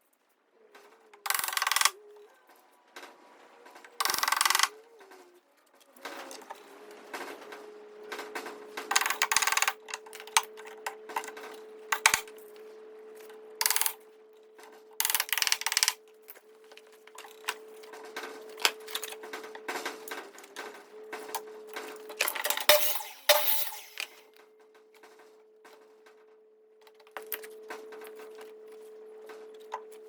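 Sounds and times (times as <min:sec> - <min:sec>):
steady hum: 0:22.2 - 0:24.2.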